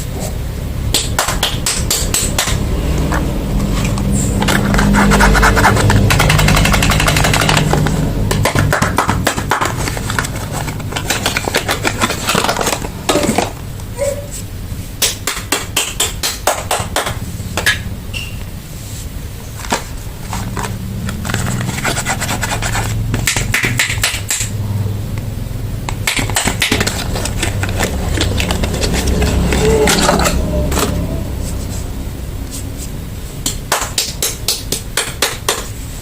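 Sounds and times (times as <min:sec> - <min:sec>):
soap packaging clicks and scratching: 0:01.0 - 0:13.6, 0:19.5 - 0:24.5, 0:25.8 - 0:31.0.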